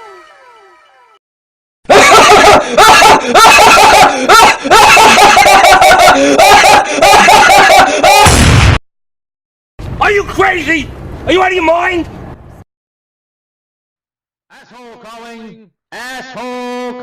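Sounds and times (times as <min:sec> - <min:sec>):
distorted cackling laughter: 0:01.9 - 0:08.3.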